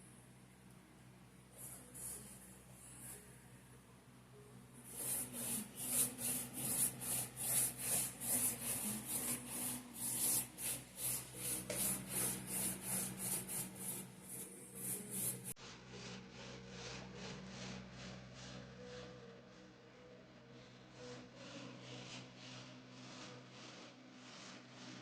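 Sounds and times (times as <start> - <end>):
brush swishing over canvas: 4.9 - 15.6.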